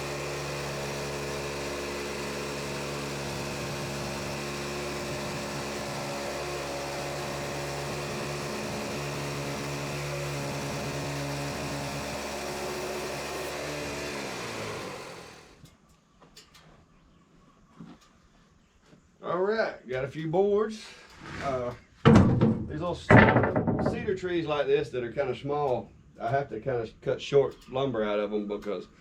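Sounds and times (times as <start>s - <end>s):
sawmill engine running: 0.0s - 15.6s.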